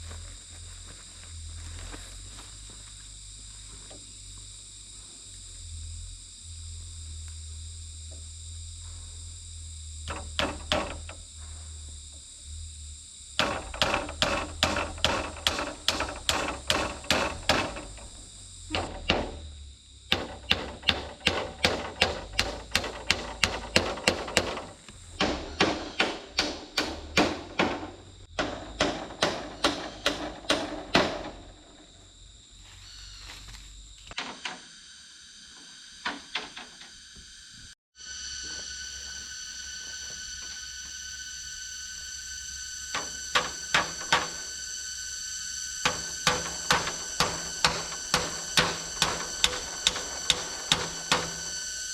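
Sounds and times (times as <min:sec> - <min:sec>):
insects chirping: 0:00.0 - 0:51.9
hand tool striking bamboo: 0:10.1 - 0:11.2, 0:13.4 - 0:18.1, 0:18.7 - 0:19.4, 0:20.1 - 0:31.4, 0:43.0 - 0:44.5, 0:45.8 - 0:51.7.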